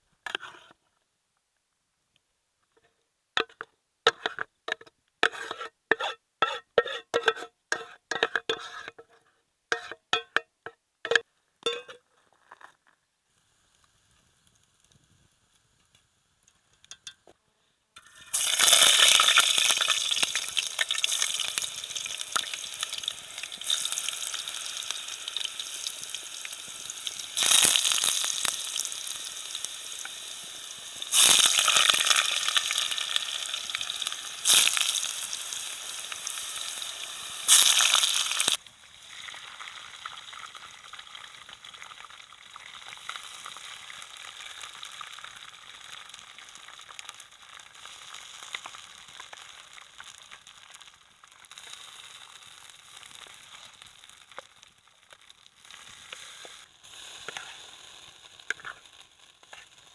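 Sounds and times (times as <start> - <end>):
food sizzling in hot fat: 13.3 - 17.2, 18.0 - 59.9.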